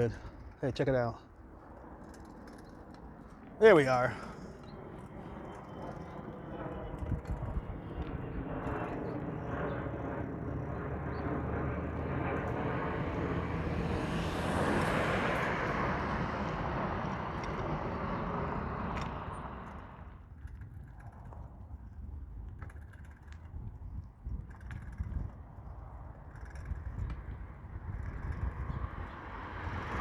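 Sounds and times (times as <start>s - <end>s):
steady traffic: 3.5s - 6.4s, 8.9s - 20.2s, 27.1s - 30.0s
vehicle passing close by: 10.6s - 20.2s, 28.5s - 30.0s.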